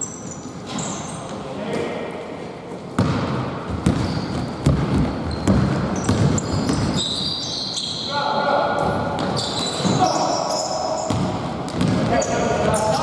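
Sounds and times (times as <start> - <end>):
high shoe squeak: 0.0 - 1.4, 3.9 - 8.3, 9.2 - 11.3
basketball bouncing on hardwood floor: 3.0 - 7.0, 11.1 - 12.8.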